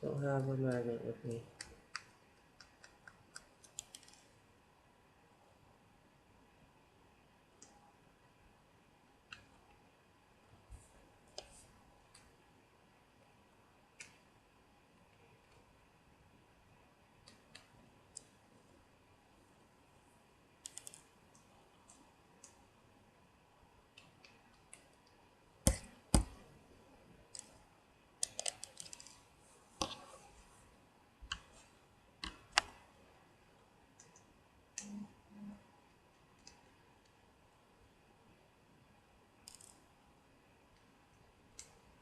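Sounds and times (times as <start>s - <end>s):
screwdriver clicking on tiny screws: 39.5s - 39.8s.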